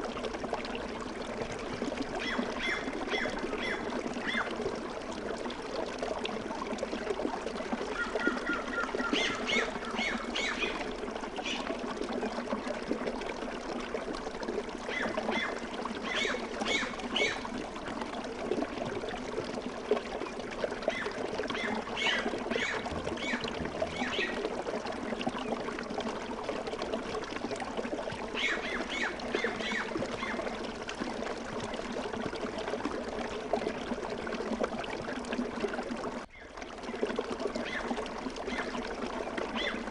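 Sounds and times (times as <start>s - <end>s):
stream flowing: 0.0s - 39.9s
birds calling: 2.2s - 4.5s, 7.9s - 11.6s, 14.9s - 17.4s, 20.9s - 24.4s, 28.4s - 30.5s.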